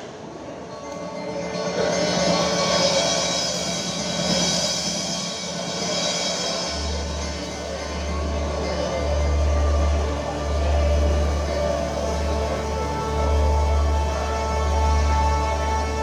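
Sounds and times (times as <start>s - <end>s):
deep bass: 6.9s - 16.0s.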